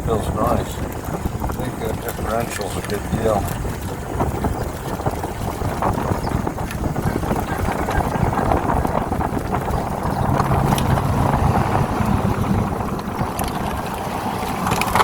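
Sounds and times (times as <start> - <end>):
road and drivetrain noise: 0.0 - 15.0
wind buffeting microphone: 0.0 - 15.0
low hum: 8.4 - 15.0.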